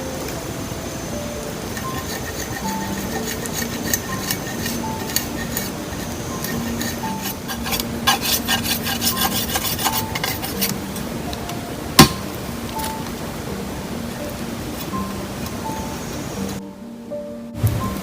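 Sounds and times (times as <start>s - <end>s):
background music: 0.0s - 18.0s
hands rubbing and scraping: 1.9s - 10.8s
clicks and scrapes: 2.0s - 10.8s.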